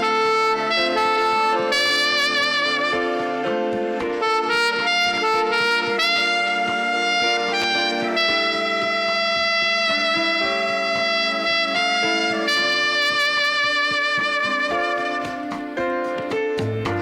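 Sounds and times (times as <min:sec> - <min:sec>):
saxophone slow melody: 0:00.0 - 0:16.0
backing track with steady beat: 0:00.0 - 0:17.0.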